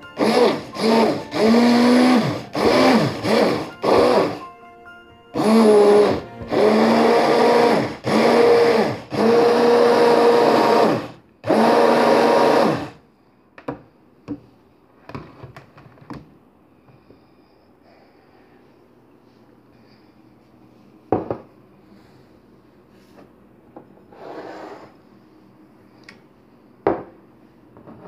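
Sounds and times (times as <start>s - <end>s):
blender running in pulses: 0.2s - 4.4s, 5.4s - 13.0s.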